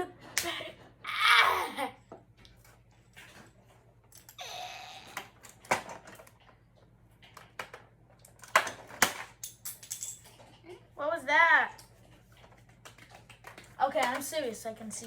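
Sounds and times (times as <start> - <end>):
plastic toys clicking and knocking: 5.0 - 6.6, 7.2 - 10.5, 11.8 - 14.7.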